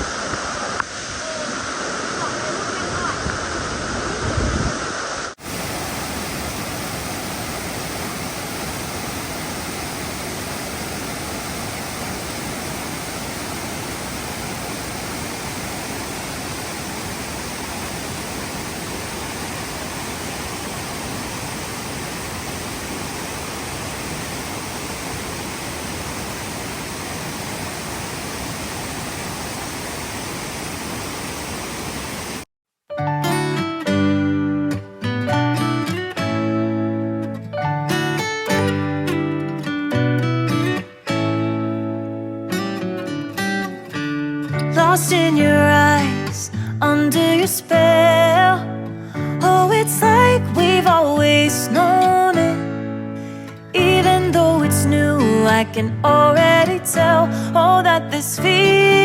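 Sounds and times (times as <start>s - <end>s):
rush of falling water: 0.0s - 32.5s.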